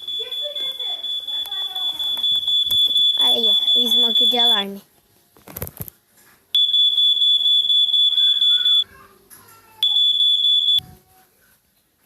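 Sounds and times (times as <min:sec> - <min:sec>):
smoke alarm high-pitched tone: 0:00.0 - 0:04.8, 0:06.6 - 0:08.8, 0:09.8 - 0:10.8.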